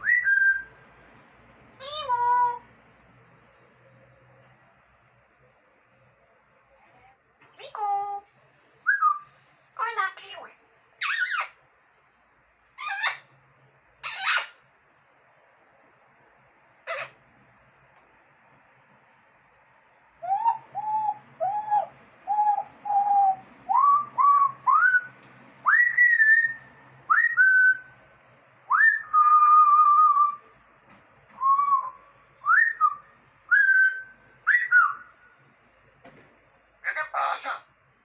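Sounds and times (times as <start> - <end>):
parrot whistling: 0.0 - 0.8, 20.2 - 27.9, 28.7 - 30.4, 31.4 - 35.1.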